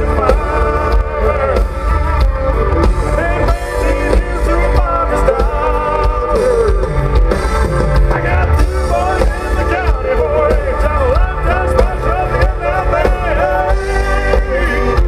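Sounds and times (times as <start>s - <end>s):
man singing: 0.0s - 2.2s, 2.8s - 7.2s, 8.0s - 15.0s
country-rock band playing: 0.0s - 15.0s
drum beat: 0.0s - 15.0s
heavy bass: 0.0s - 15.0s.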